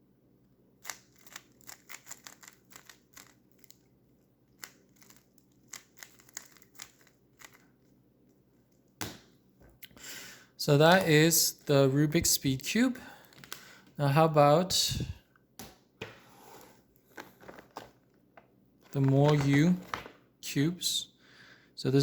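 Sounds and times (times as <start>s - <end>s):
puzzle cube plastic clicks: 0.8s - 3.9s, 4.6s - 7.6s.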